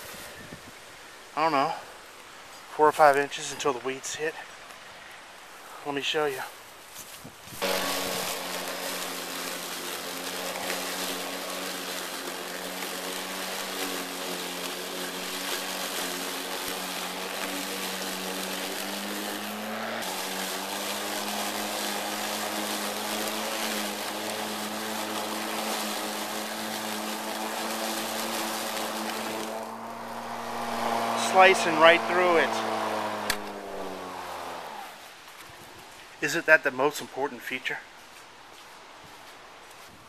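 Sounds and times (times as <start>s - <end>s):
mower blade cutting grass: 5.9s - 35.3s
electric lawn mower motor hum: 7.6s - 35.1s.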